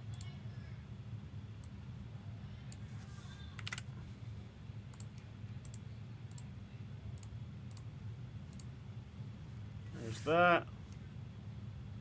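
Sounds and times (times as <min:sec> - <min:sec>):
computer mouse clicking: 0:04.9 - 0:06.5.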